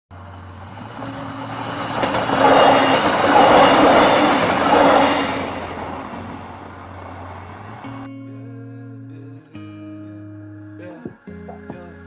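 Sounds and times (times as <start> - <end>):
model train passing: 0.1 - 8.1
train sound effects: 0.1 - 8.1.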